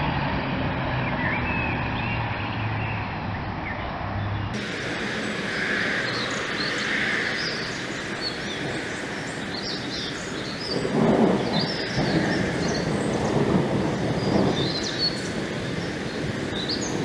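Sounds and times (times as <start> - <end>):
songbirds chirping: 0.9 - 17.0
distant thunder rumble: 4.6 - 17.0
outdoor hiss: 4.6 - 17.0.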